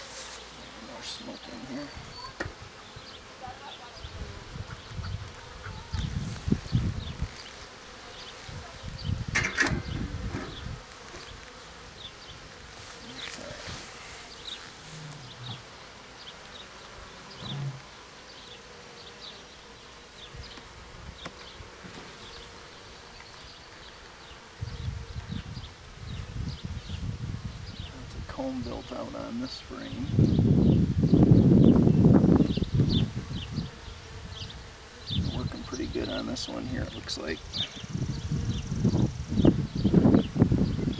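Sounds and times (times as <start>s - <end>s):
bees whining past: 0.0s - 20.6s
bees buzzing: 0.0s - 40.9s
low rumbling: 9.2s - 10.8s.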